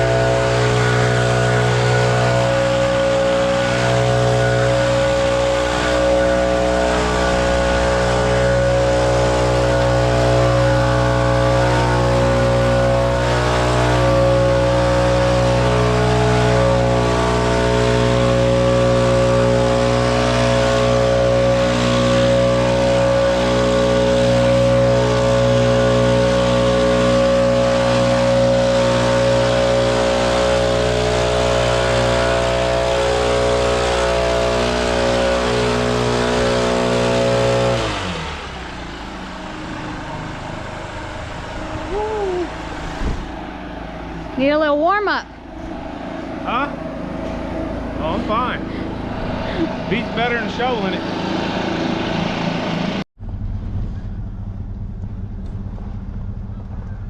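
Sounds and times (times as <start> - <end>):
snow-clearing machine engine running: 0.0 - 57.0.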